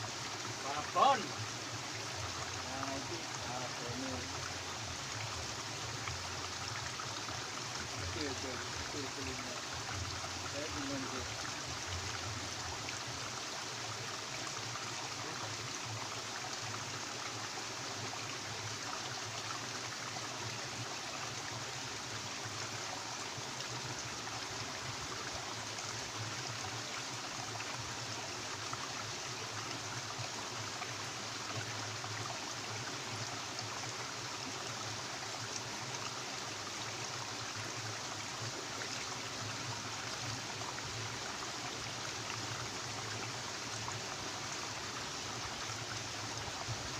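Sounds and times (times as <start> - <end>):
stream water rushing: 0.0 - 46.9.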